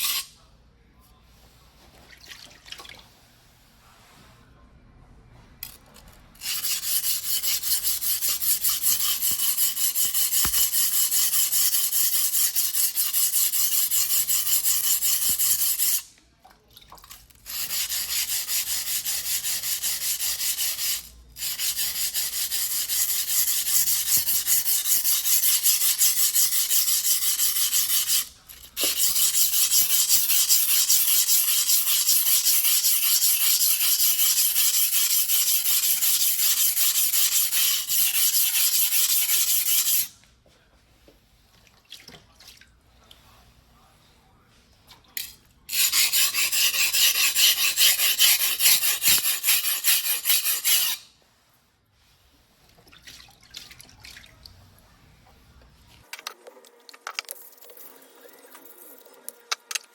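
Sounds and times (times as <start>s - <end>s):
knife scraping on whetstone: 0.0s - 0.3s, 6.4s - 16.0s, 17.5s - 40.1s, 45.7s - 51.0s.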